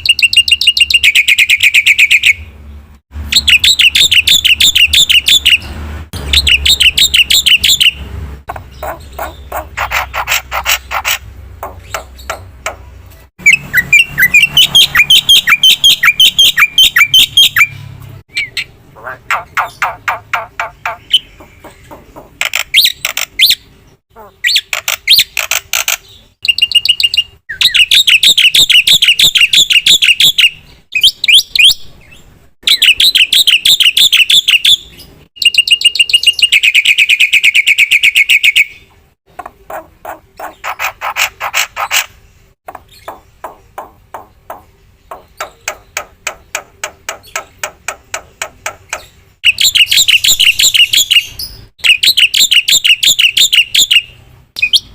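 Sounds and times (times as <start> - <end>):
bird singing loudly: 0.0 - 2.5, 3.3 - 10.2, 13.4 - 25.4, 26.0 - 38.9, 48.9 - 54.9.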